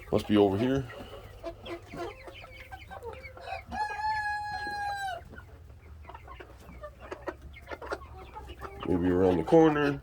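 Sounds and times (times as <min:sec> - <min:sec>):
chickens clucking: 0:00.0 - 0:10.0
rooster crowing: 0:03.8 - 0:05.2.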